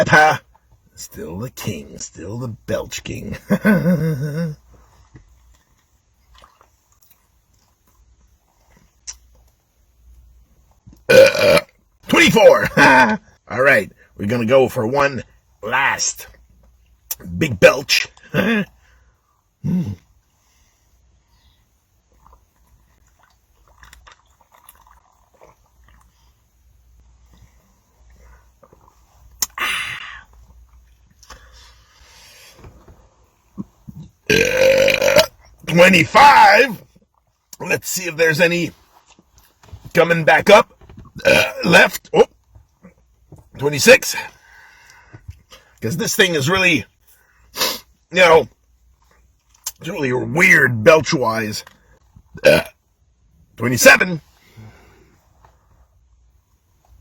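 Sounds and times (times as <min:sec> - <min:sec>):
man belching: 0:03.4 - 0:04.6, 0:11.1 - 0:11.7, 0:18.2 - 0:18.7, 0:19.6 - 0:20.0, 0:29.4 - 0:30.2, 0:34.3 - 0:35.3, 0:41.2 - 0:42.3, 0:52.4 - 0:52.8
mouth smacks and swallows: 0:05.0 - 0:09.6, 0:22.1 - 0:26.2.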